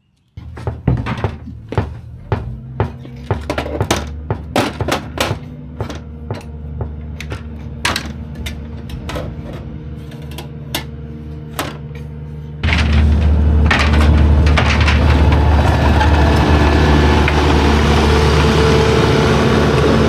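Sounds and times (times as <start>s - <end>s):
tools knocking: 0.4s - 9.3s.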